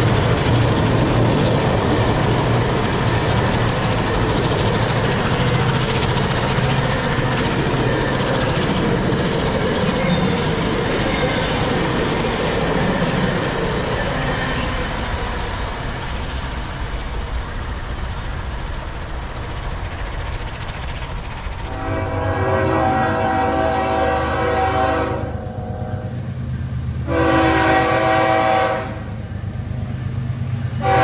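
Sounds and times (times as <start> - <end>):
train wheels on rails: 0.0 - 31.0
locomotive horn: 21.7 - 26.2, 27.0 - 29.1, 30.8 - 31.0.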